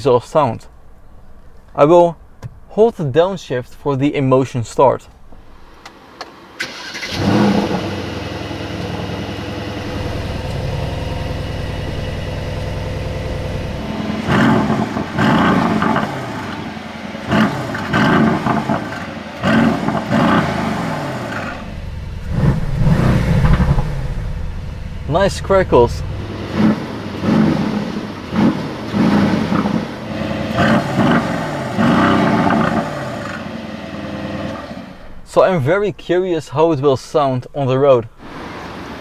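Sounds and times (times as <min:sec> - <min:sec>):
car engine starting and idling: 0:00.0 - 0:36.4
exhaust crackles: 0:00.0 - 0:39.0
engine revving: 0:06.6 - 0:35.3.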